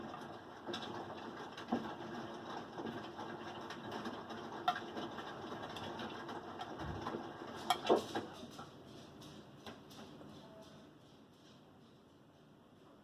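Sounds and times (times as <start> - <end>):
washing machine knocking: 0.0 - 8.8
washing machine drum humming: 0.0 - 13.0.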